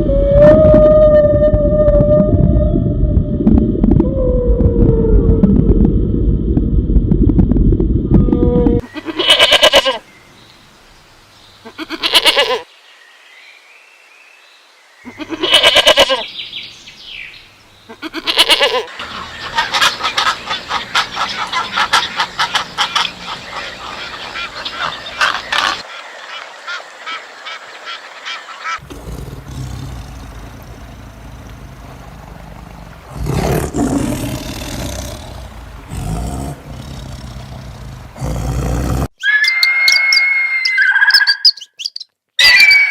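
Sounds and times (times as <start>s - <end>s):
animal calls: 17.9s - 38.4s.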